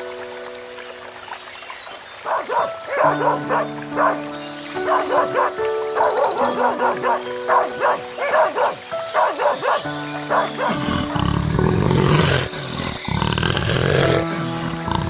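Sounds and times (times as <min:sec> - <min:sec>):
background music: 0:02.2 - 0:15.0
lion roaring: 0:10.3 - 0:15.0.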